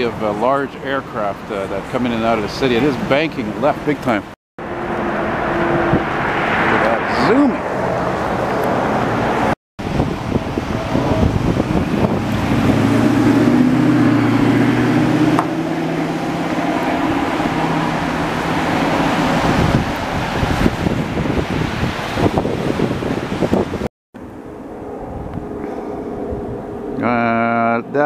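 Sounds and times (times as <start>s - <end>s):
traffic noise: 0.0s - 28.0s
wind: 0.0s - 28.0s
low engine drone: 4.6s - 21.2s, 24.2s - 28.0s.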